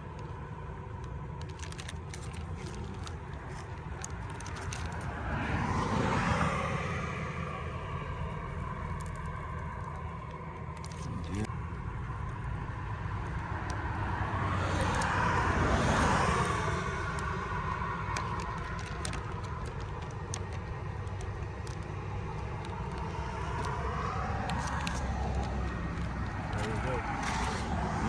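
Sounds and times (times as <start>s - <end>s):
low traffic rumble: 0.0s - 28.0s
car passing by: 4.4s - 11.5s, 12.8s - 28.0s.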